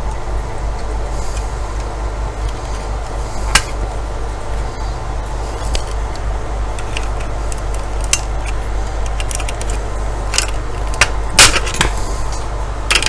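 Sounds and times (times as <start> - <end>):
steady low hum: 0.0 - 13.0
metal parts clicking and clinking: 5.5 - 13.0.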